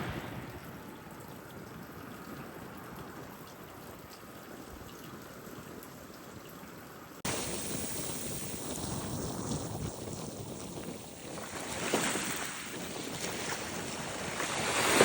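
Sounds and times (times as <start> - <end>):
ocean surf: 0.0 - 1.2, 11.4 - 15.0
wind buffeting microphone: 0.0 - 3.8, 7.3 - 15.0.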